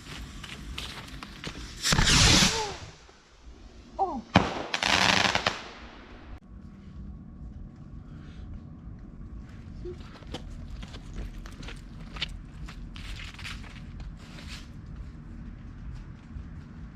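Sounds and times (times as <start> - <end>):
fireworks crackling pops: 0.0 - 3.2, 4.3 - 6.3
fireworks hissing bursts: 1.7 - 3.1, 4.4 - 5.9
firework bang: 1.8 - 2.9, 4.3 - 6.1
falling firework whistles: 1.8 - 3.0.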